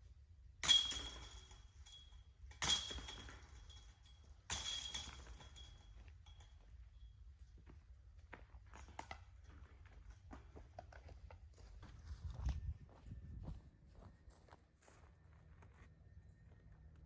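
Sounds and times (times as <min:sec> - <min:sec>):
discs striking basket chains: 0:00.6 - 0:07.2, 0:08.7 - 0:10.8.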